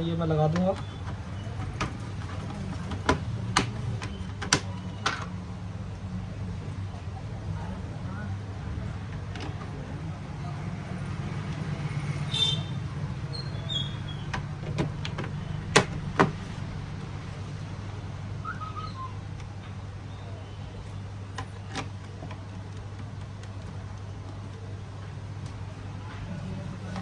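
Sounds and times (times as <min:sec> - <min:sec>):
plastic laptop cover clicks: 0:02.9 - 0:05.2.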